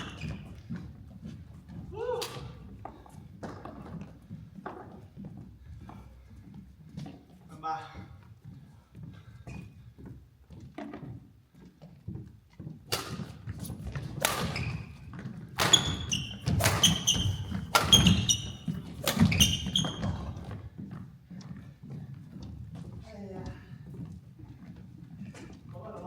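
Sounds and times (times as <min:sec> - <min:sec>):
shoes squeaking on court: 0:00.0 - 0:07.5, 0:09.4 - 0:23.1
rackets hitting shuttlecock: 0:02.2 - 0:02.7, 0:12.9 - 0:20.2.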